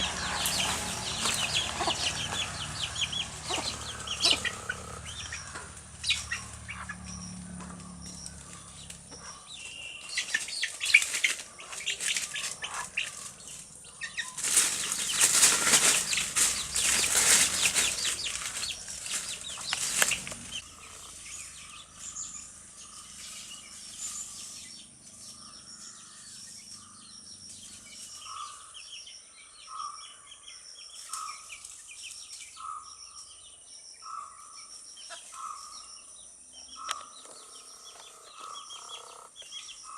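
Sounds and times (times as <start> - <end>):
chicken wings flapping: 14.4 - 20.6.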